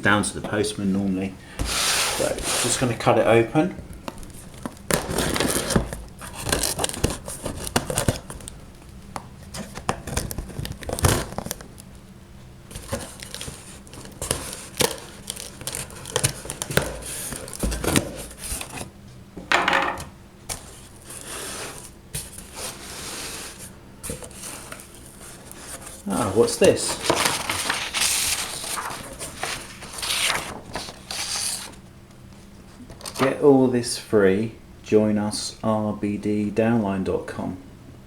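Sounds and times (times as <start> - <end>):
cardboard scraping: 1.6 - 3.0, 4.4 - 8.4, 20.5 - 31.8
packing crinkling: 4.0 - 11.9, 12.7 - 18.8, 23.5 - 31.8
tape tearing: 4.6 - 8.3.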